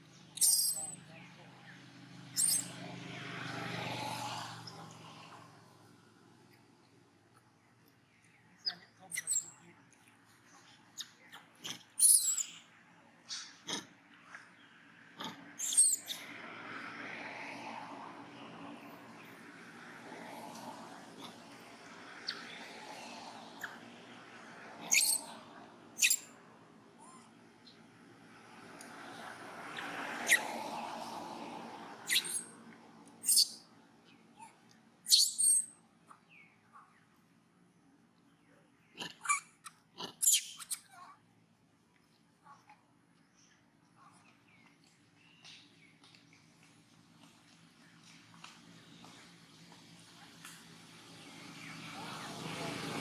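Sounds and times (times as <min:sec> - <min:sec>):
baby monkey squeaking: 0:00.4 - 0:01.0, 0:02.3 - 0:02.8, 0:08.6 - 0:09.6, 0:11.0 - 0:12.6, 0:15.2 - 0:16.2, 0:24.8 - 0:25.4, 0:26.0 - 0:26.3, 0:30.2 - 0:30.5, 0:32.0 - 0:32.5, 0:33.2 - 0:33.6, 0:35.1 - 0:35.7, 0:39.0 - 0:41.0.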